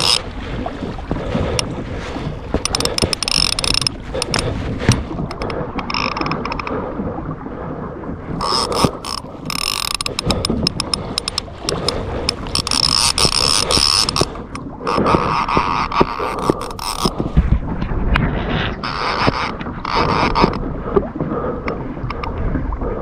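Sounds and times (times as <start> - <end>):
mechanical clicking and ratcheting: 8.4 - 11.4.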